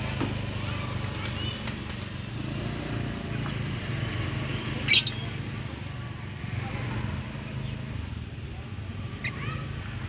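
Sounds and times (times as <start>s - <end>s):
lovebird chirps: 4.9s - 5.3s.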